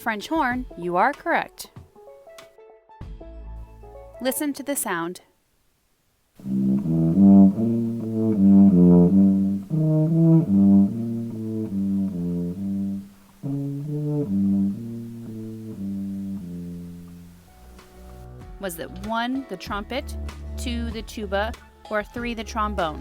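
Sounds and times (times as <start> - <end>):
tuba playing low melody: 6.4 - 18.3.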